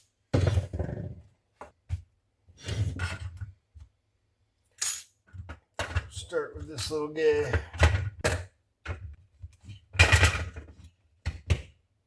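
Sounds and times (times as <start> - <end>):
metal toy parts knocking and scraping: 9.7 - 10.9.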